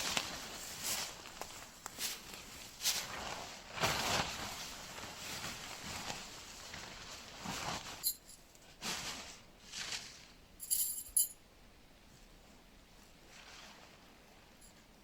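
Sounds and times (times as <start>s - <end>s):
rustling and shuffling: 0.0s - 11.4s, 12.0s - 15.0s
metallic jingling and clinking: 10.6s - 11.4s.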